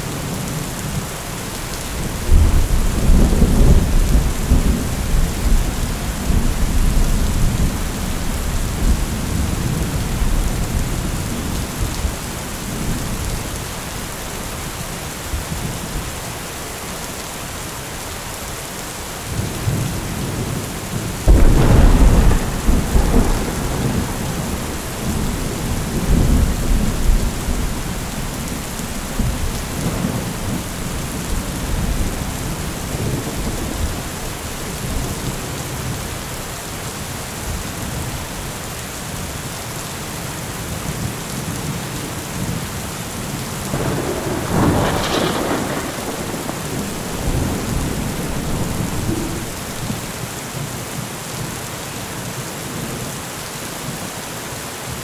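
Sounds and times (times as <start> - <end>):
heavy rain falling: 0.0 - 55.0
thunderclap rumbling: 1.9 - 13.3, 19.6 - 36.2, 43.7 - 50.3.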